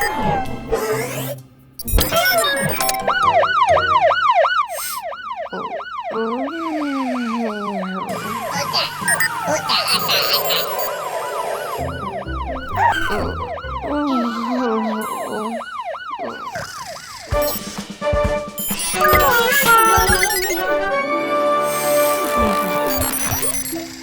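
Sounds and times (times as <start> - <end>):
cartoon fire truck siren wailing: 2.0 - 17.7, 18.8 - 24.0
background music: 10.4 - 14.3, 17.3 - 24.0.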